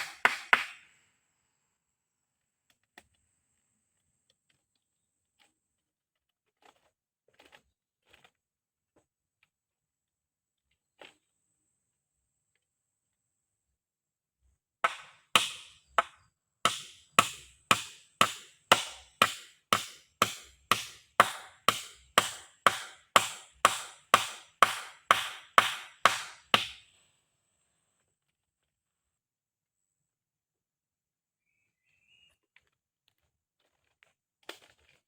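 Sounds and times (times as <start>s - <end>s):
wood being chopped: 0.0s - 0.8s, 14.8s - 26.8s.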